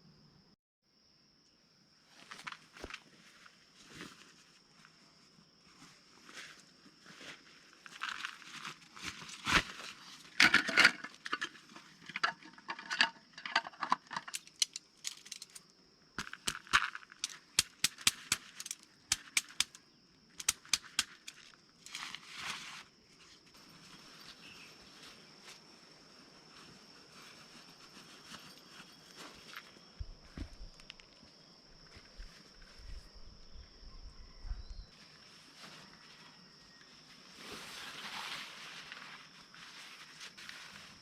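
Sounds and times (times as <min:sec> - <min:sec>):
rustling: 0:02.2 - 0:19.8, 0:20.4 - 0:33.4, 0:34.9 - 0:41.0
sharp clicks and taps: 0:17.2 - 0:19.8.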